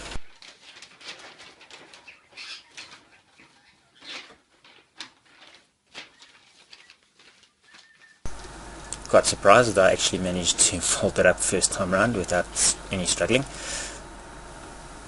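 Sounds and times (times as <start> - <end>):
paper rustling and crinkling: 0.0 - 8.3.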